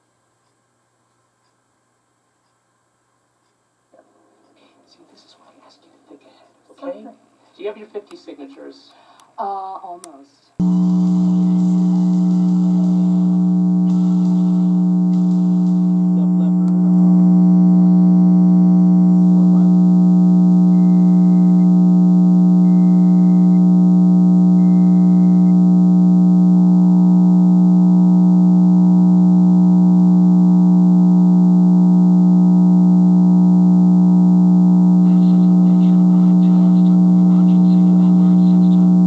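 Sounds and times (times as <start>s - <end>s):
data bursts: 10.6s - 30.2s, 30.8s - 39.0s
loud low hum: 10.6s - 39.0s
steady attention tone: 10.6s - 39.0s
person speaking: 11.2s - 20.2s, 35.0s - 39.0s.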